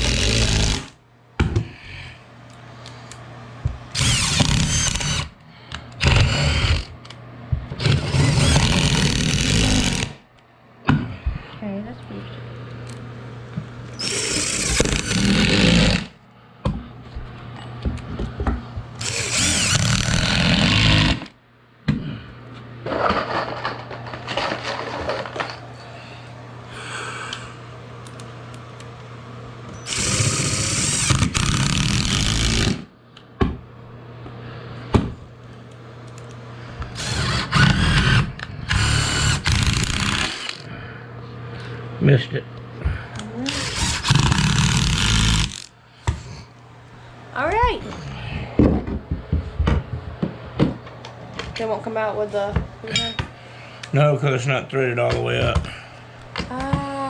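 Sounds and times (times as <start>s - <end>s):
power drill driving screws: 0.0s - 0.9s, 4.0s - 5.3s, 6.0s - 6.9s, 7.8s - 10.2s, 13.9s - 16.1s, 19.0s - 21.3s, 29.8s - 32.8s, 37.0s - 40.6s, 43.5s - 45.7s.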